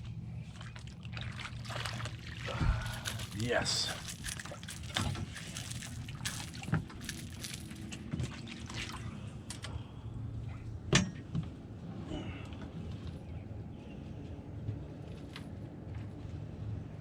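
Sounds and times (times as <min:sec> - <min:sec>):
water splashing and sloshing: 0:00.0 - 0:13.2.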